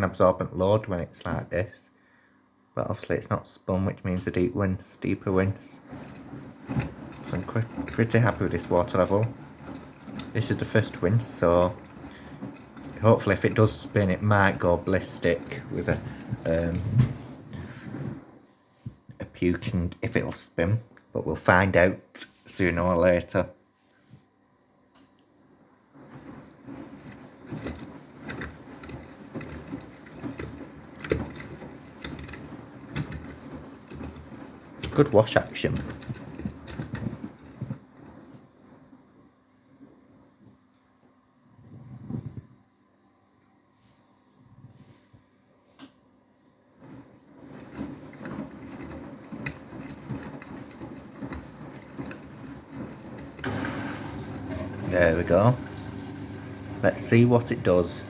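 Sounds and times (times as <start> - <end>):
washing machine drum motor: 2.8 - 23.5, 25.4 - 40.4, 46.7 - 58.0
water and laundry sloshing: 3.8 - 20.8, 25.9 - 38.6, 46.7 - 58.0.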